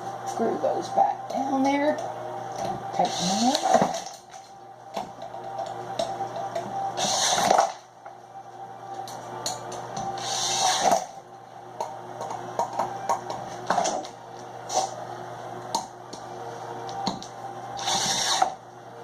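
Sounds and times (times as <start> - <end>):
screws being driven: 17.8 - 18.6.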